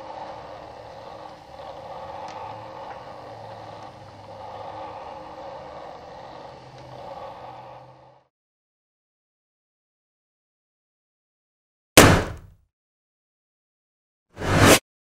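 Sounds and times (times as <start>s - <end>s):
steady droning noise: 0.0s - 8.3s.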